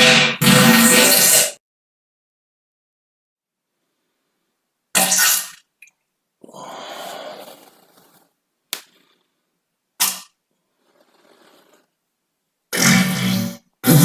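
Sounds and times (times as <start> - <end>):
person farting: 0.0 - 1.6, 10.0 - 11.8, 12.7 - 14.0.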